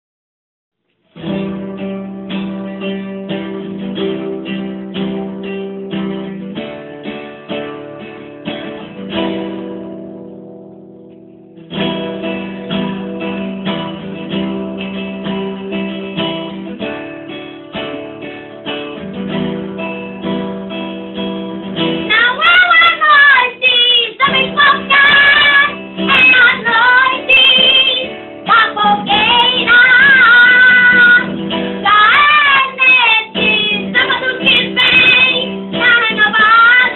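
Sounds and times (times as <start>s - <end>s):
acoustic guitar strumming chords: 1.1s - 36.9s
high-pitched voice singing: 22.1s - 36.9s.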